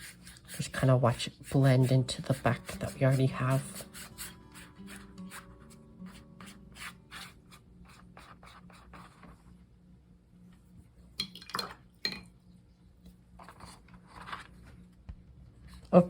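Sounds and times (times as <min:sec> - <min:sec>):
brush strokes scratching paper: 0:00.0 - 0:09.5.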